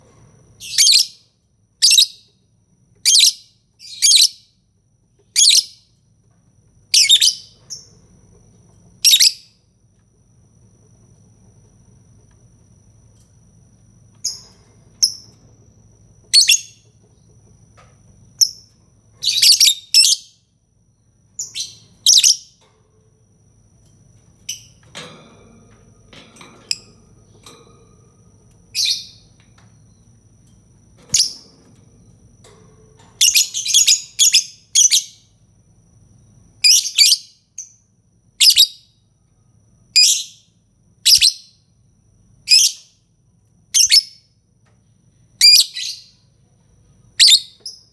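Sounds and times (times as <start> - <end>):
lovebird chirps and shrieks: 41.1 - 41.4, 47.2 - 47.6.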